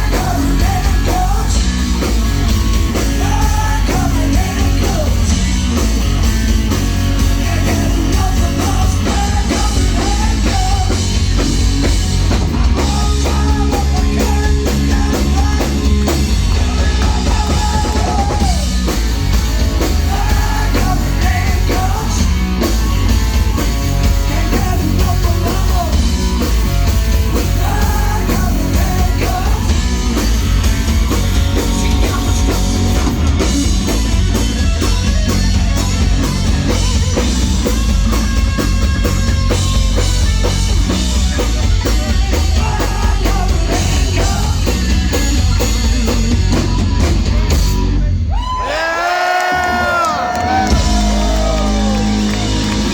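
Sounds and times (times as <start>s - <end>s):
electric guitar: 0.0s - 48.3s, 49.4s - 52.9s
heavy bass: 0.0s - 48.9s, 49.5s - 52.9s
drum kit: 0.0s - 52.9s.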